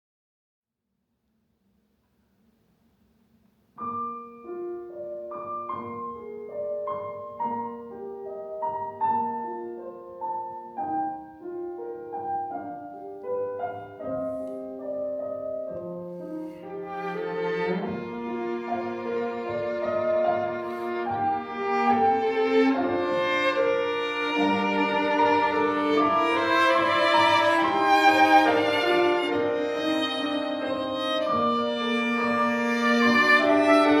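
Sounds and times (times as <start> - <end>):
piano notes: 3.8 - 34.0
bowed strings: 15.8 - 34.0.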